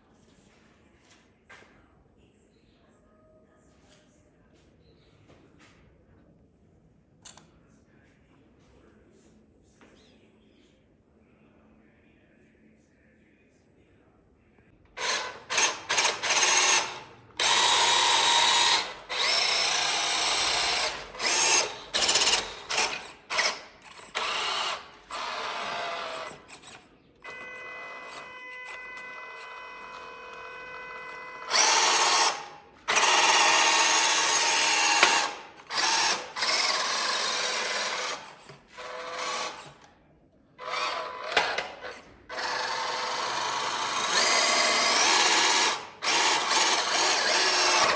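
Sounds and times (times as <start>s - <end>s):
toy vehicle electric motors whirring: 15.0s - 39.9s, 40.6s - 47.9s.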